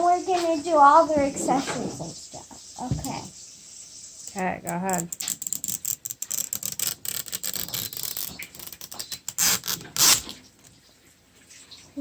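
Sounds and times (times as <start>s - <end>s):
plastic packaging crackling: 4.8s - 10.8s.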